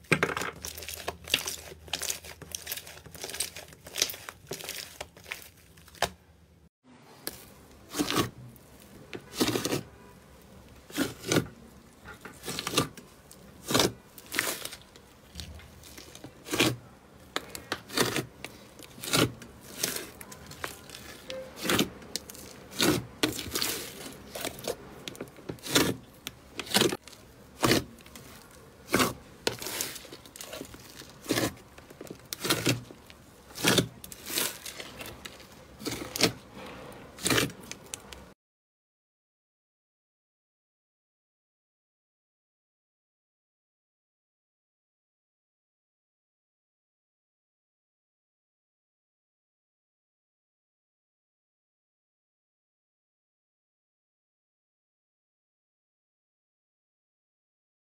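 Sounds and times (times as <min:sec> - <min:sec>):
slime crackling: 0:00.5 - 0:06.2, 0:07.3 - 0:38.3.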